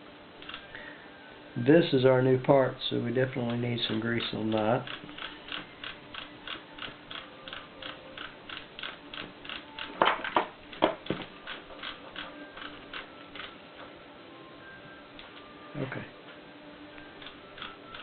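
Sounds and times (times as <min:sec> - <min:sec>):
steady ticking: 0:04.6 - 0:10.0.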